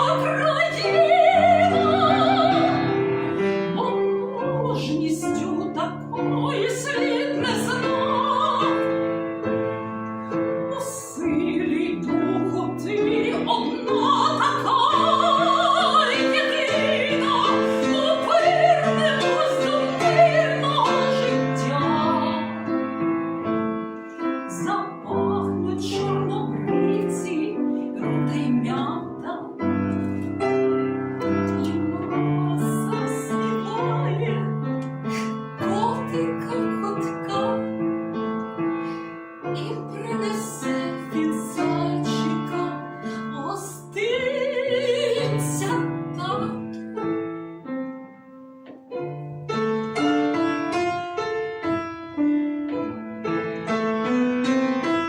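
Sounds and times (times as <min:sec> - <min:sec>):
trained singer with vibrato: 0:00.0 - 0:09.1, 0:10.7 - 0:22.5
piano accompaniment: 0:00.0 - 0:55.0.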